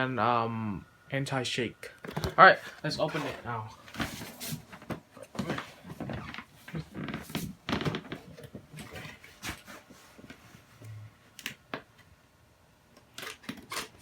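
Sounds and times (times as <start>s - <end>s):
cardboard packaging clicks and knocks: 3.9s - 10.4s.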